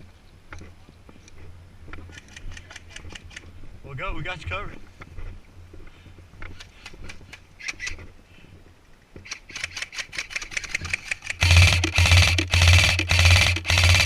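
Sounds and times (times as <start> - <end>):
airsoft gun clicks: 9.2 - 14.0
gearbox rattling: 9.4 - 14.0
airsoft gun full-auto bursts: 9.5 - 14.0
low motor hum: 11.4 - 14.0.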